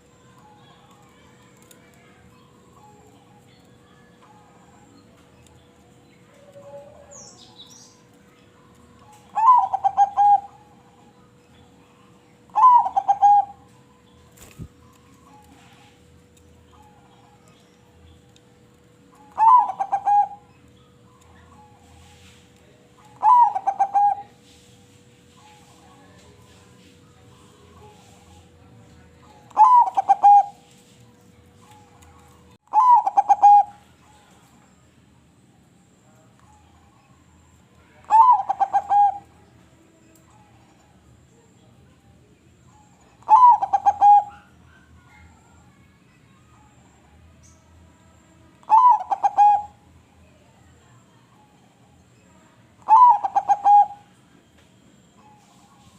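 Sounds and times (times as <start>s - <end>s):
dove cooing: 9.3s - 10.8s, 12.5s - 13.7s, 19.2s - 20.5s, 23.2s - 24.4s, 29.5s - 30.6s, 32.7s - 33.8s, 38.0s - 39.3s, 43.2s - 44.6s, 48.7s - 49.8s, 52.8s - 54.1s.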